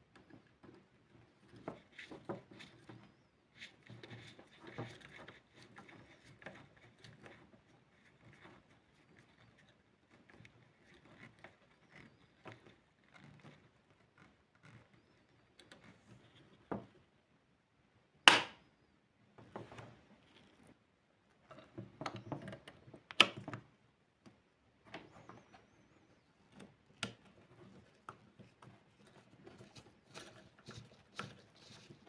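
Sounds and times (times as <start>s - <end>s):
sharp knock: 18.3s - 18.6s.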